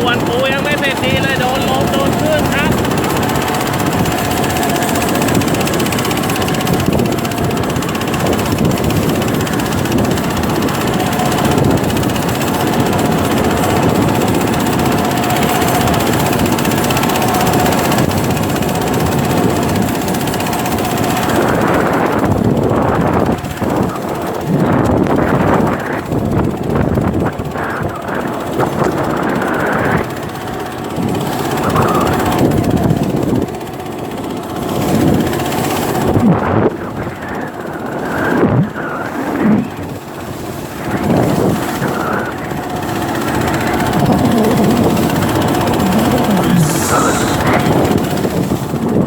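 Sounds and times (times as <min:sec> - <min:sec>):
rough waves: 0:00.0 - 0:24.6, 0:37.9 - 0:48.7
boat engine running: 0:00.0 - 0:49.0
wind buffeting the microphone: 0:00.0 - 0:49.0.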